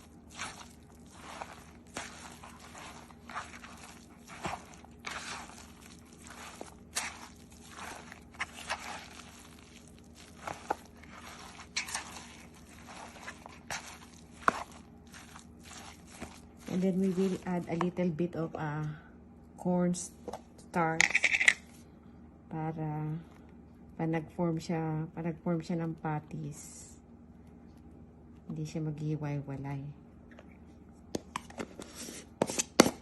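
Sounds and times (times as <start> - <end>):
mixture stirred and mashed in bowl: 0.0 - 18.9, 20.2 - 21.6.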